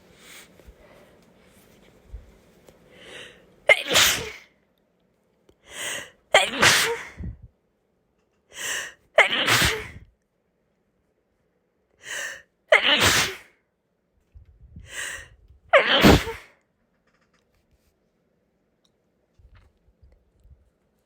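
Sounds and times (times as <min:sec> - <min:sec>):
quick in-breath: 0:02.9 - 0:03.4, 0:05.6 - 0:06.2, 0:12.0 - 0:12.4, 0:14.8 - 0:15.4
person sneezing: 0:03.7 - 0:04.5, 0:06.4 - 0:07.4, 0:09.2 - 0:10.0, 0:12.7 - 0:13.5, 0:15.8 - 0:16.5.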